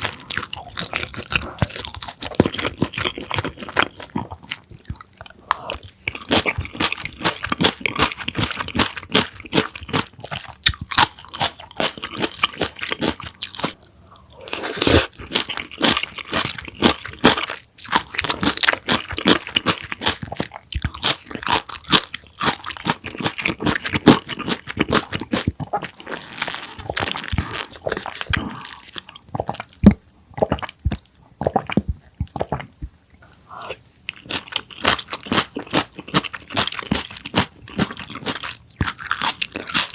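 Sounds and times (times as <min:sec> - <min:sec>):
crunching and chewing cabbage: 0:00.0 - 0:32.7, 0:34.0 - 0:39.9.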